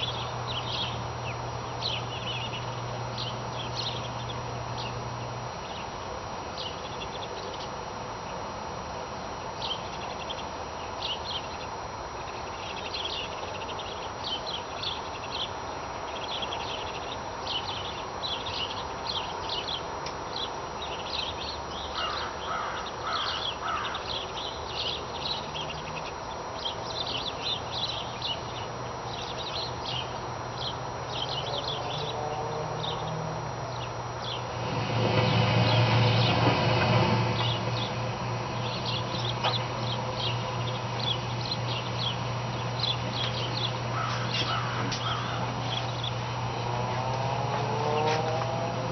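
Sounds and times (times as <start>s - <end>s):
birds chirping: 0.0s - 48.9s
steady low hum: 0.0s - 48.9s
low bird call: 12.6s - 34.5s, 38.6s - 46.3s.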